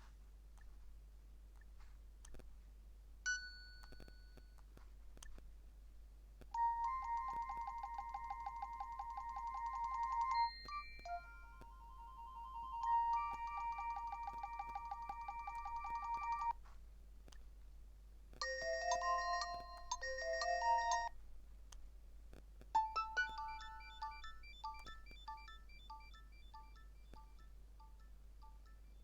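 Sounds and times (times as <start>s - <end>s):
electronic ringtone melody: 6.6s - 16.5s, 18.4s - 21.1s, 22.8s - 28.7s
pulsing ringtone: 6.6s - 16.5s, 18.4s - 21.1s, 22.8s - 29.0s
short repeated ringtone beeps: 6.6s - 16.5s, 22.8s - 29.0s.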